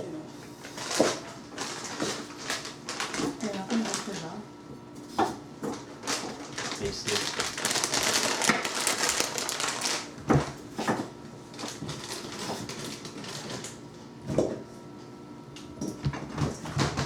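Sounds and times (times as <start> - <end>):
knocks and handling noises: 15.8 - 17.0.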